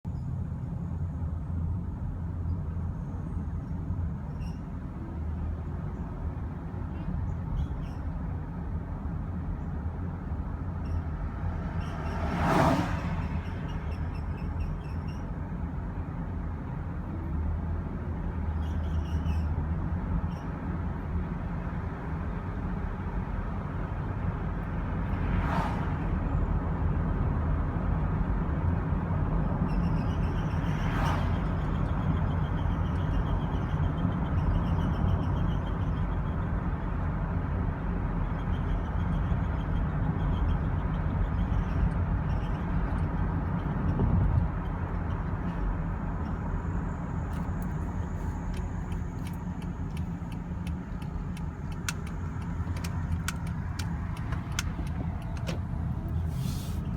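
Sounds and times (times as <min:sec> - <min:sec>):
road and drivetrain rumble: 0:00.0 - 0:56.9
faint high-pitched squeak: 0:04.3 - 0:04.8, 0:18.6 - 0:19.5.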